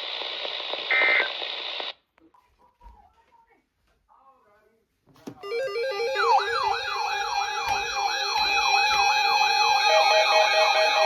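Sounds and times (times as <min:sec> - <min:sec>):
two-tone siren: 0:05.4 - 0:11.0
yelping electronic siren: 0:05.4 - 0:11.0.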